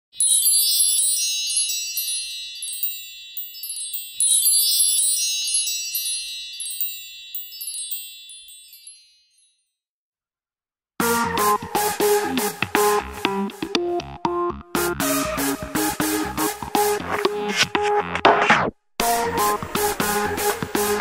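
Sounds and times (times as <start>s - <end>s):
high-pitched chimes tinkling: 0.1s - 9.8s.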